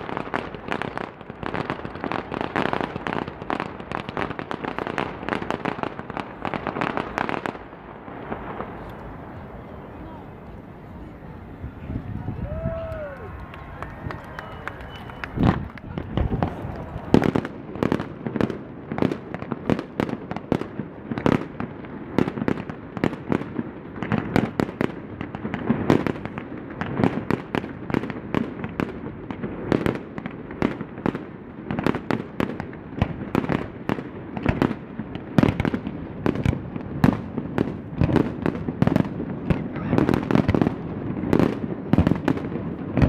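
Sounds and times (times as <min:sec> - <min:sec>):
fireworks bursting with booming echoes: 0:00.0 - 0:43.0
fireworks crackle: 0:00.0 - 0:43.0.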